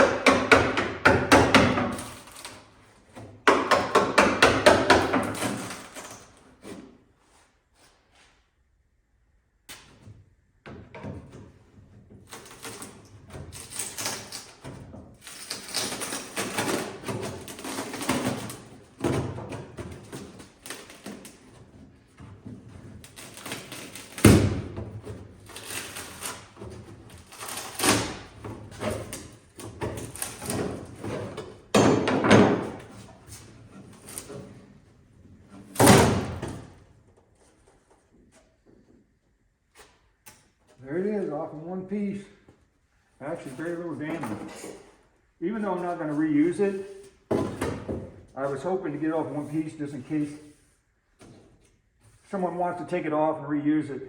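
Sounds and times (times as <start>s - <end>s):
fiberglass cracking and scraping: 23.0s - 24.5s, 25.4s - 31.0s.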